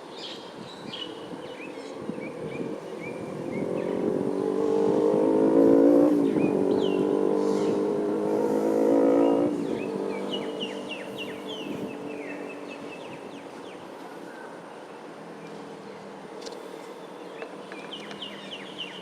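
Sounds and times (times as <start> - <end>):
birds chirping: 0.0 - 19.0
vehicle engine passing by: 2.4 - 13.8.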